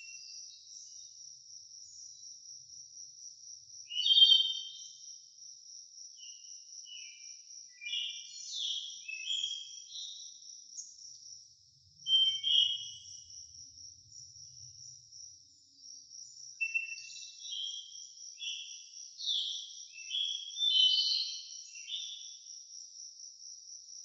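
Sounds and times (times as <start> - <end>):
high insect trill: 4.6 - 24.0
songbird whistled phrases: 12.1 - 12.8.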